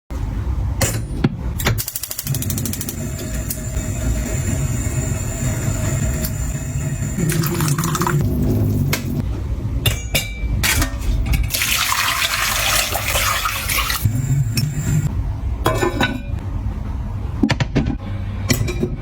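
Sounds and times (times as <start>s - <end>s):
water running from a tap: 7.0s - 8.2s, 11.5s - 14.1s
kitchenware knocking and clinking: 15.6s - 16.4s.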